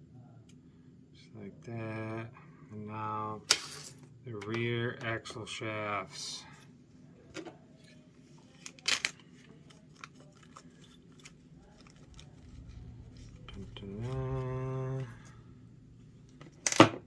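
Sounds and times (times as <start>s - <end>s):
steady pitched hum: 10.8s - 17.0s.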